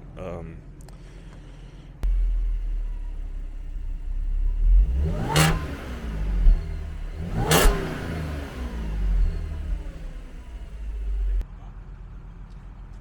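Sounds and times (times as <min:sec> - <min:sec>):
car engine idling and revving: 0:02.0 - 0:11.4.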